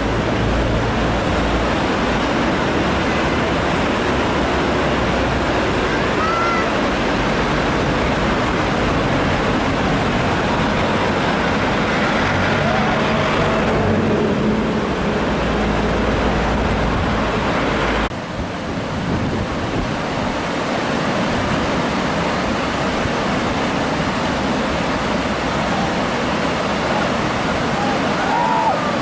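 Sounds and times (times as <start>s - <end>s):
whitewater river rushing: 0.0s - 29.0s
low rumble: 7.2s - 18.1s.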